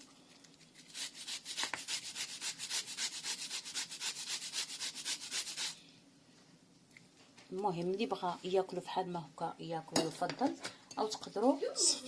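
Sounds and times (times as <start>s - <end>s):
turnip being grated: 0.8s - 5.8s.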